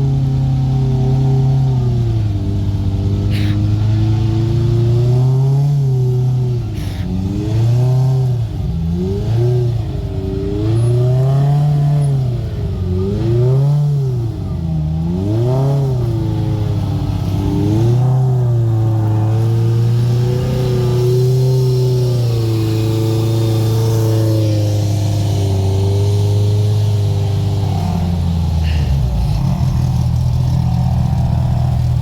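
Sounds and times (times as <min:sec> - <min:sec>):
off-road vehicle engine revving: 0:00.0 - 0:32.0.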